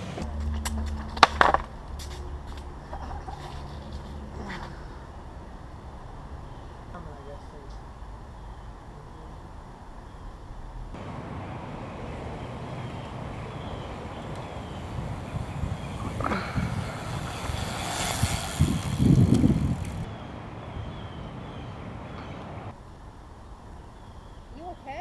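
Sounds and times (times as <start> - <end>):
motor vehicle passing: 0.0 - 0.3, 11.0 - 22.8.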